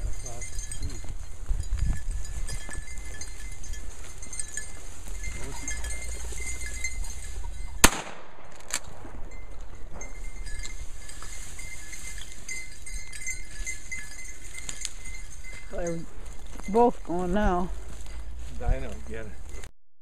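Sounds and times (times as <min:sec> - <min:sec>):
wind and brush noise: 0:00.0 - 0:19.7
shotgun blast: 0:07.8 - 0:09.0.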